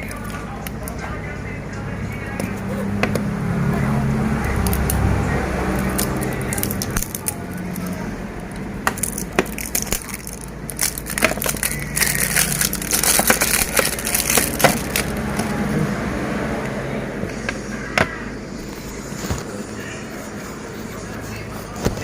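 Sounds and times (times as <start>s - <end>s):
plastic packaging crinkling: 8.9s - 15.5s.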